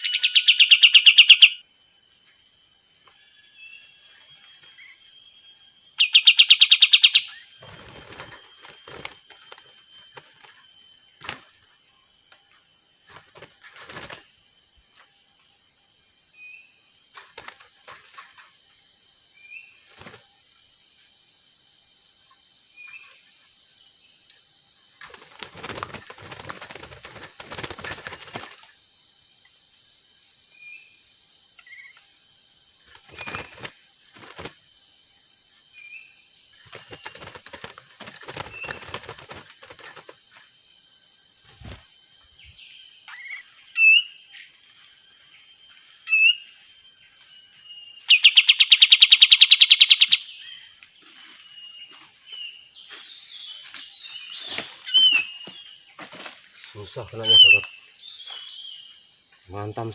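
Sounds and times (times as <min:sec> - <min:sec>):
bird chattering trill: 0:00.0 - 0:01.6, 0:06.0 - 0:07.6, 0:48.1 - 0:50.6, 0:57.2 - 0:58.7
bird chirps: 0:00.0 - 0:01.6, 0:03.0 - 0:11.4, 0:30.6 - 0:32.0, 0:41.6 - 0:44.6, 0:45.2 - 0:56.0, 0:56.6 - 0:59.7
bird wings flapping: 0:07.6 - 0:10.6, 0:11.2 - 0:11.6, 0:13.0 - 0:14.3, 0:17.1 - 0:18.4, 0:19.9 - 0:20.3, 0:25.0 - 0:28.7, 0:32.8 - 0:34.6, 0:36.6 - 0:40.5, 0:41.4 - 0:41.9, 0:54.4 - 0:54.8, 0:55.4 - 0:56.5.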